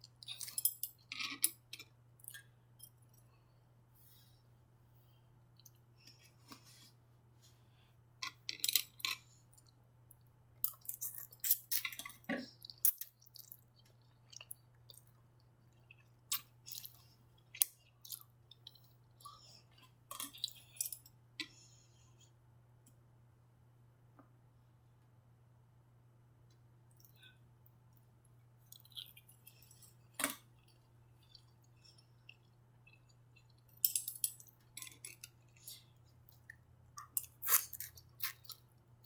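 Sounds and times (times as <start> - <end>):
wet chewing and mouth clicks: 12.6 - 19.0.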